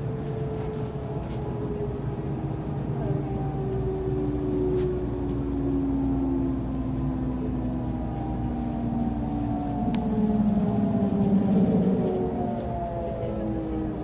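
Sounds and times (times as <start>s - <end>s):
electric train inverter whine: 0.0s - 14.0s
wheels rumbling on rail: 0.0s - 14.0s.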